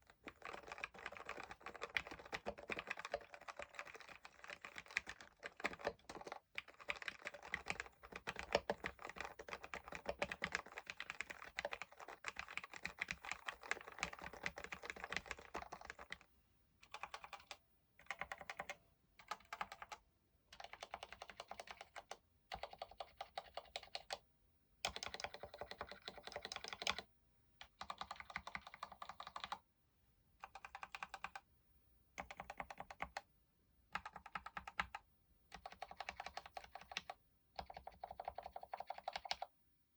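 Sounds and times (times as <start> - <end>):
fast mechanical keyboard typing: 0.0 - 16.2, 16.8 - 20.0, 20.6 - 24.2, 24.8 - 27.0, 27.6 - 29.6, 30.4 - 31.4, 32.2 - 33.2, 34.0 - 39.5
repeated key presses: 0.0 - 24.2, 24.8 - 29.6, 30.4 - 31.5, 32.2 - 33.3, 33.9 - 39.5.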